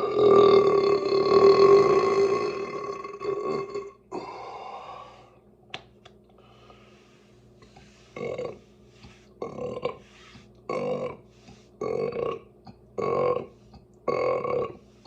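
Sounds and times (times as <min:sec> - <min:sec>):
person burping: 0:00.0 - 0:04.5, 0:09.4 - 0:11.2, 0:11.8 - 0:14.9.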